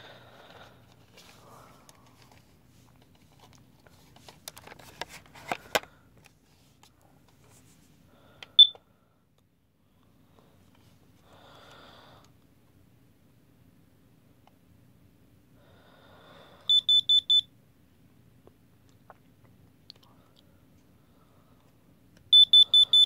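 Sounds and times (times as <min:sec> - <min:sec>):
clicks and knocks of handled detector: 0:01.9 - 0:06.3
short high-pitched alarm beep: 0:22.4 - 0:23.0.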